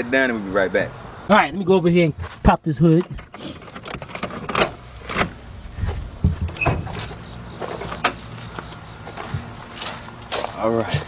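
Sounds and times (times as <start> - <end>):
car hood latch clicks and clunks: 2.9 - 7.2.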